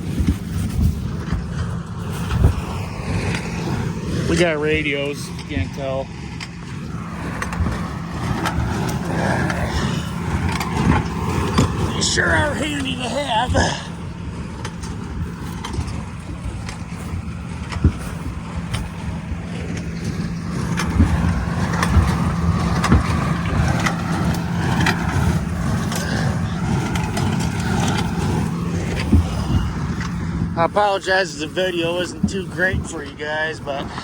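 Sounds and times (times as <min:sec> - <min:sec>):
tractor engine under load: 0:00.0 - 0:34.0
machinery knocks and rattles: 0:14.2 - 0:34.0.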